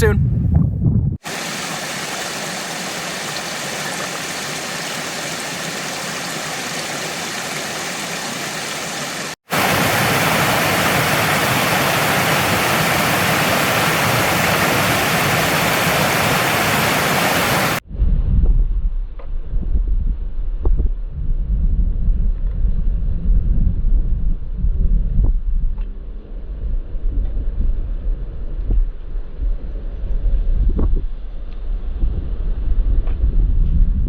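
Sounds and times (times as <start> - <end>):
stream water rushing: 1.2 - 17.8.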